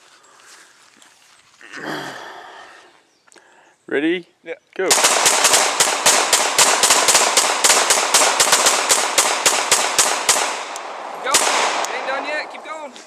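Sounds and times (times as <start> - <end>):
rapid pistol shots: 4.9 - 12.4.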